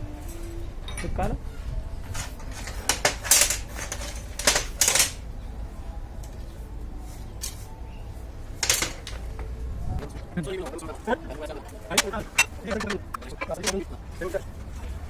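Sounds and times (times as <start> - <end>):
metal tools clinking: 2.1 - 5.3, 8.6 - 9.3.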